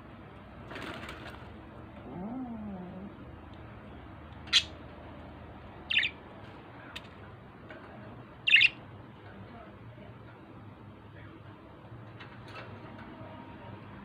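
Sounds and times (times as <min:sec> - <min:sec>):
budgerigar chirps: 0:04.5 - 0:04.8, 0:05.9 - 0:06.2, 0:08.5 - 0:08.8.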